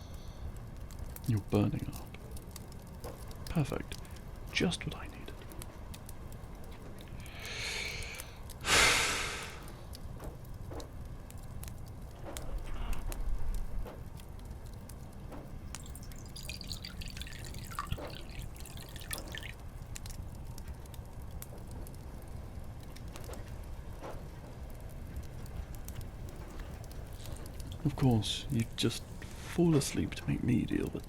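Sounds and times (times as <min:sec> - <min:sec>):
water dripping and trickling: 0:00.4 - 0:08.6, 0:13.4 - 0:23.9, 0:24.5 - 0:29.7.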